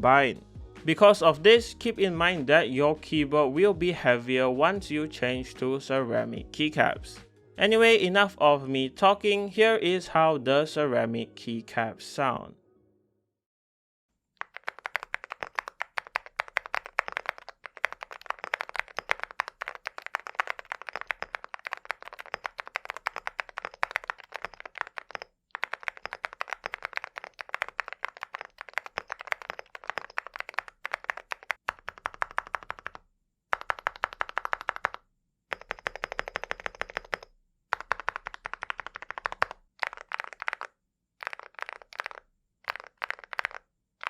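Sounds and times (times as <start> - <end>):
mechanical keyboard typing: 14.4 - 43.6.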